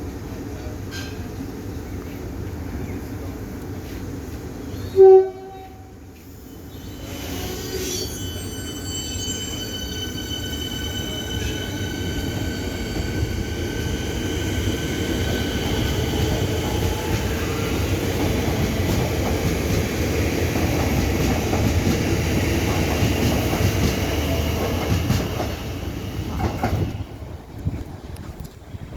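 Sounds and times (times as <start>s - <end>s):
train wheels rumbling on rail: 0.0s - 28.9s.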